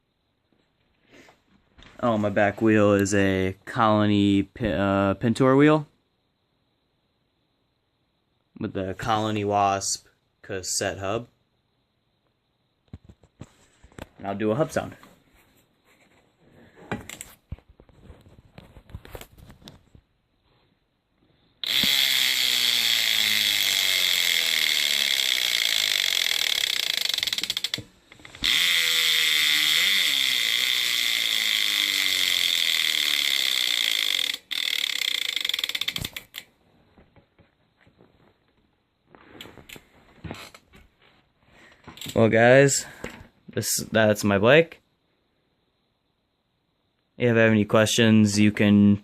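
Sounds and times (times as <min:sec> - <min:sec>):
bicycle freewheel ratcheting buzz: 0:21.6 - 0:36.5.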